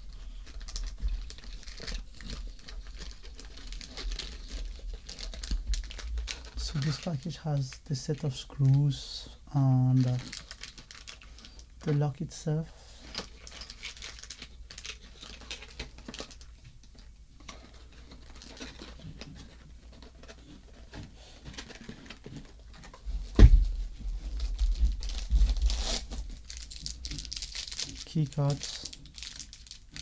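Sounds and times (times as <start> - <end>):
packaging crinkling and tearing: 0.0 - 9.0, 9.8 - 12.3, 13.0 - 30.0
packaging rustling and clicks: 0.1 - 8.7, 9.9 - 12.4, 13.0 - 30.0
thump: 23.3 - 23.8.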